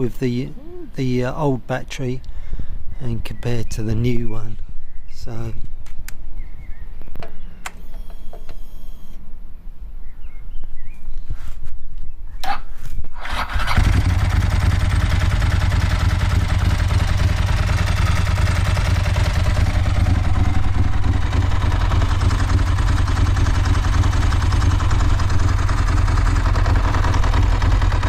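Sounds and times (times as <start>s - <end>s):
motorcycle engine idling: 13.2s - 28.0s.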